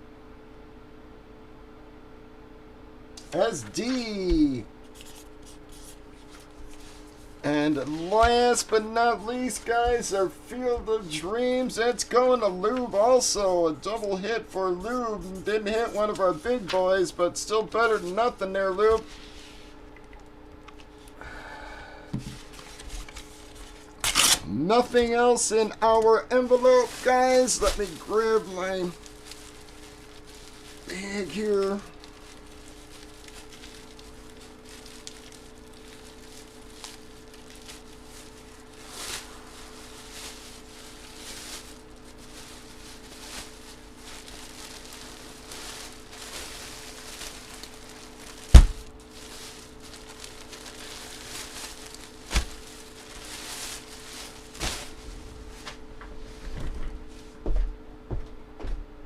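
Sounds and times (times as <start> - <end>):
steady low hum: 0.0 - 59.0
rustling in a bag: 3.4 - 10.2, 26.5 - 57.2.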